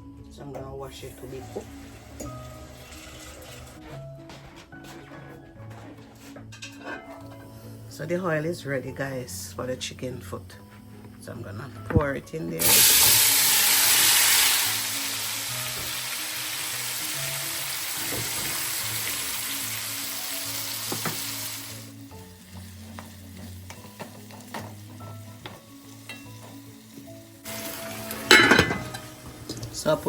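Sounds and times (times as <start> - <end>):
food sizzling in hot oil: 1.3 - 3.8, 12.6 - 30.0.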